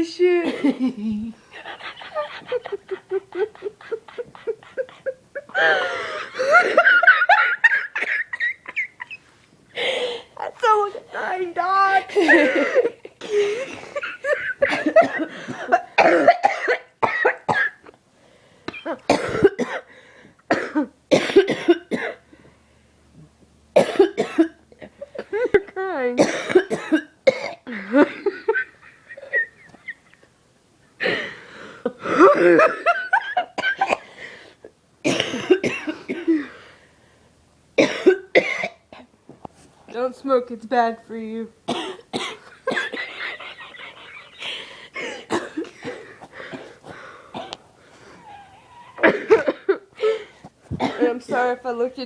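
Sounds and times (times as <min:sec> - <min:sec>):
woman coughing: 0:00.2 - 0:01.0, 0:04.2 - 0:08.8, 0:10.4 - 0:17.9, 0:18.7 - 0:19.9, 0:20.5 - 0:22.2, 0:23.8 - 0:28.4, 0:32.2 - 0:34.1, 0:35.0 - 0:36.5, 0:37.8 - 0:39.1, 0:41.7 - 0:43.4, 0:45.0 - 0:47.6, 0:48.7 - 0:51.5
person laughing: 0:00.4 - 0:09.2, 0:11.8 - 0:15.1, 0:27.7 - 0:30.2
woman gasping: 0:05.5 - 0:06.6, 0:09.8 - 0:11.2, 0:43.8 - 0:49.1, 0:50.0 - 0:50.5.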